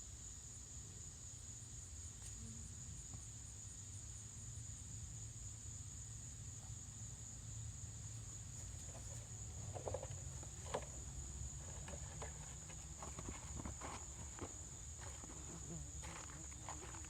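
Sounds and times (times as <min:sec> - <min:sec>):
insects droning: 0:00.0 - 0:17.0
hand digging through potting soil: 0:08.7 - 0:17.0.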